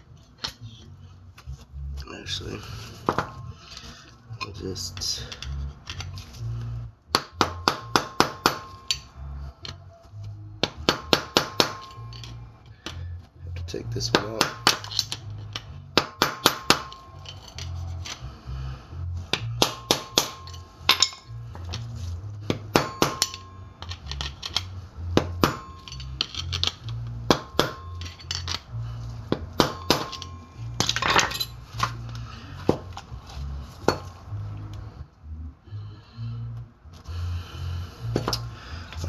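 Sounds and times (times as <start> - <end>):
hammer striking metal: 7.1 - 9.1, 10.6 - 13.0, 14.1 - 15.1, 16.0 - 17.1, 19.3 - 21.3, 22.5 - 24.2, 25.2 - 28.6, 29.3 - 32.0.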